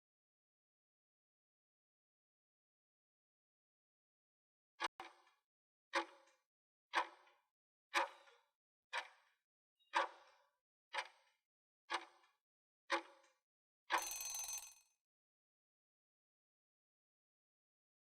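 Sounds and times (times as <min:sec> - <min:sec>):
ringing bell tone: 0:14.0 - 0:14.8.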